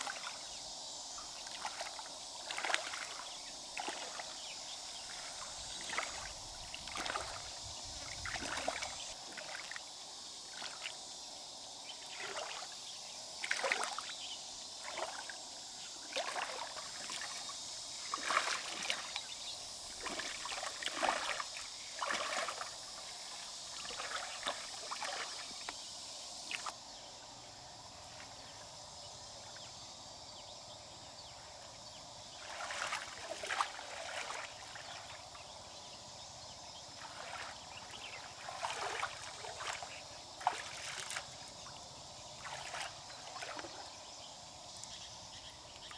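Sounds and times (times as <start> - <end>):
water splashing and sloshing: 0.0 - 0.6, 1.2 - 11.1, 12.0 - 26.8, 31.6 - 44.9
steady high hiss: 3.1 - 32.5.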